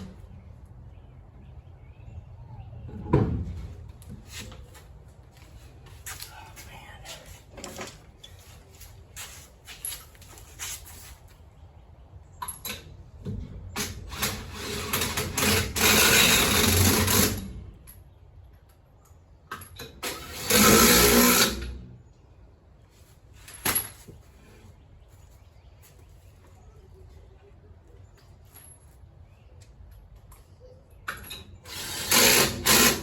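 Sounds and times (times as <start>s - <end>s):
power tool running: 14.1s - 17.5s, 20.0s - 21.8s, 31.7s - 33.0s.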